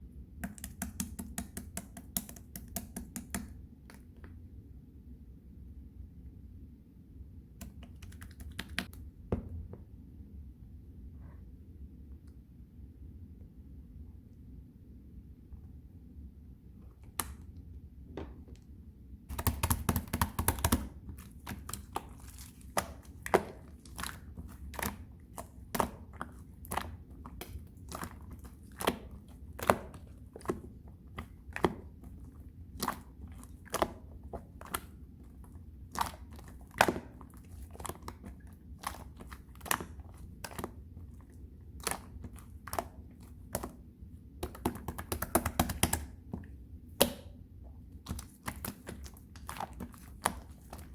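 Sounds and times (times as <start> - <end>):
rapid crackling of slime: 19.3 - 50.9.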